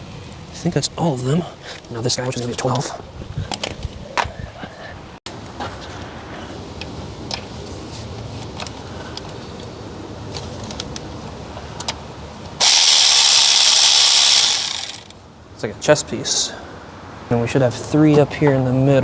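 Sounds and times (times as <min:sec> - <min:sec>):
socket wrench clicking: 0:12.6 - 0:15.2.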